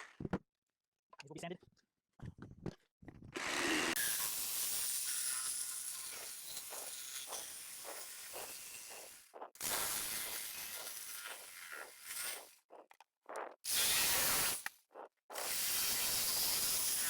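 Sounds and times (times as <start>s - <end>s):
air or spray hissing: 13.7s - 14.7s.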